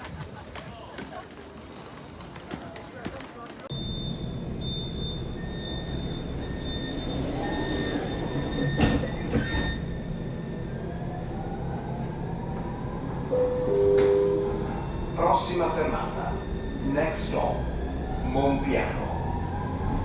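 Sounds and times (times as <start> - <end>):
train clunks: 7.9 - 9.9.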